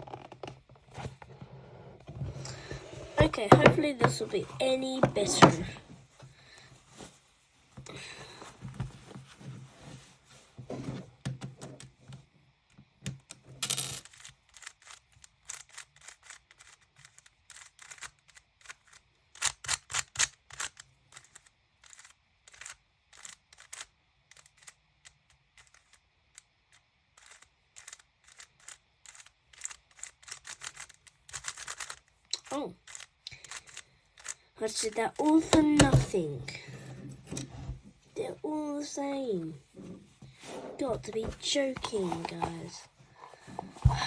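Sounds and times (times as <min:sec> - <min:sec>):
speedcube plastic clicks: 0:12.8 - 0:36.0.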